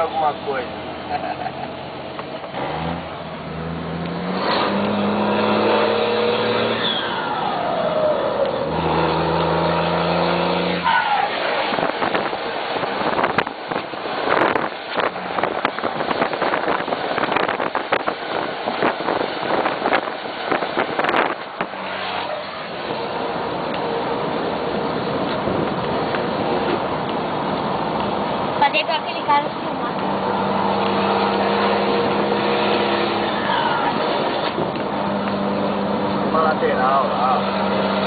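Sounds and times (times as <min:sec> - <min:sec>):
diesel truck engine running hard: 0:00.0 - 0:38.0
rough rushing noise with flutter: 0:11.4 - 0:23.7.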